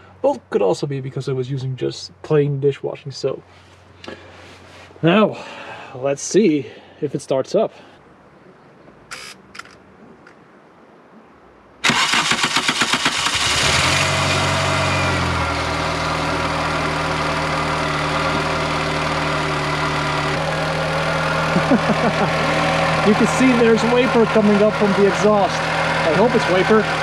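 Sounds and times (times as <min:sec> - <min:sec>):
car engine idling: 0:11.8 - 0:27.0
starter cranking engine: 0:11.8 - 0:27.0.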